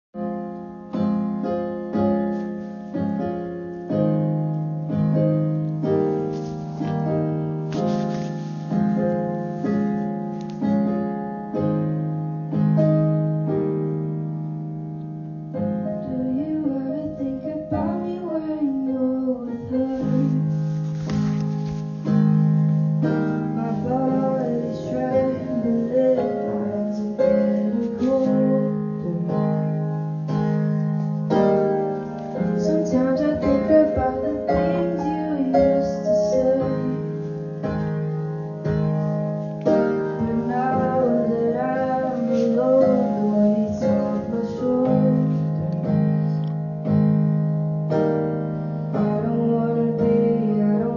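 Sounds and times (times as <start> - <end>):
piano chords: 0.2 - 50.9
solo voice singing: 23.6 - 29.6, 40.2 - 45.8.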